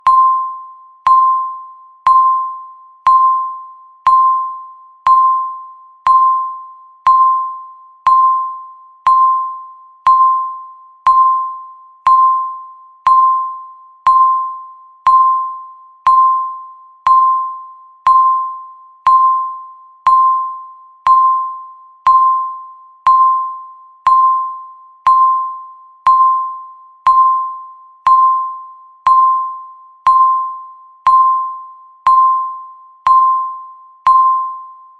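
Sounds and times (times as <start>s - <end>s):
electronic timer ticks: 10.0s - 11.4s.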